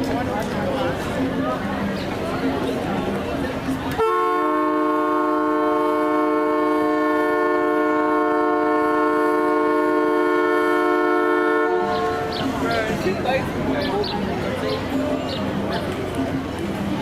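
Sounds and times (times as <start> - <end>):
horn sounding a chord: 4.0 - 12.7.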